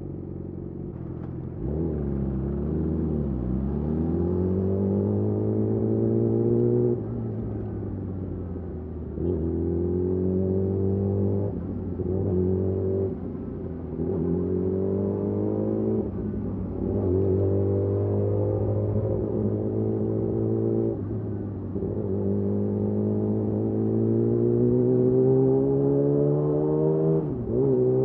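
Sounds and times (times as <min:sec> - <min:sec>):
motorcycle engine revving: 0:21.7 - 0:28.0.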